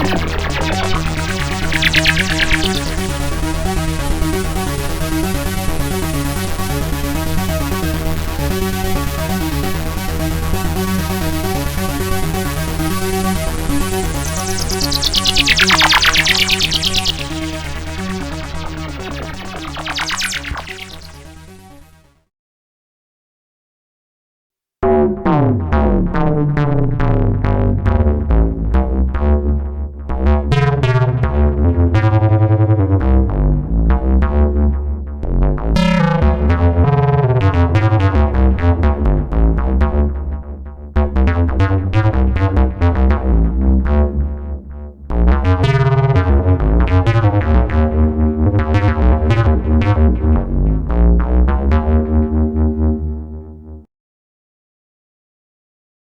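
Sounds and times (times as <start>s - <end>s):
heavy synth bass line: 0.0s - 21.9s, 33.0s - 53.8s
synthesizer notes: 0.0s - 22.1s, 33.3s - 53.8s.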